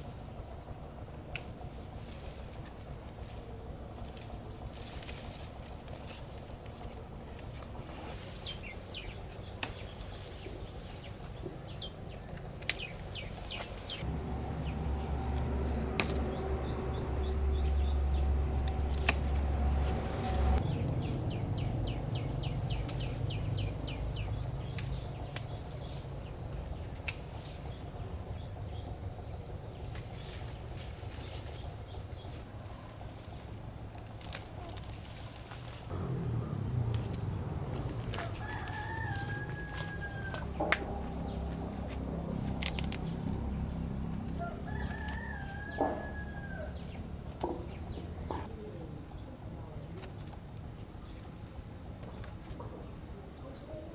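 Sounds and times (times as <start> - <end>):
high-pitched insect drone: 13.5 - 32.2, 33.4 - 53.9
low rumble: 14.0 - 29.5, 34.8 - 44.7.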